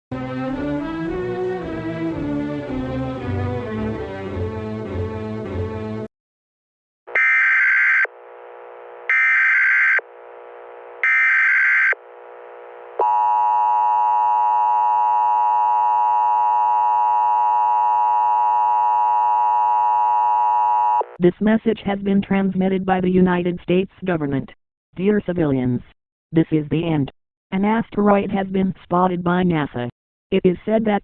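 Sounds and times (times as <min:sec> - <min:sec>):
orchestral music: 0:00.1 - 0:06.1.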